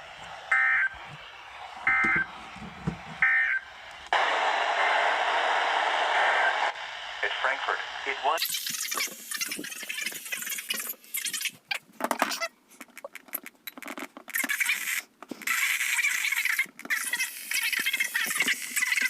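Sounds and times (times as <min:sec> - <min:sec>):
radio static hissing and crackling: 0:00.0 - 0:11.4.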